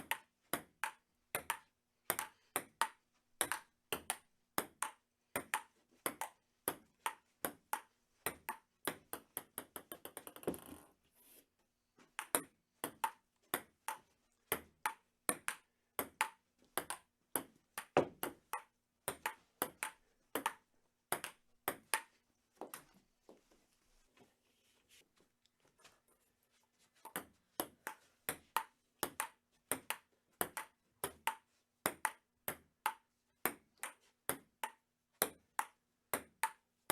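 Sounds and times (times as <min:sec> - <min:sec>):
ping-pong ball clicking: 0:12.2 - 0:22.1.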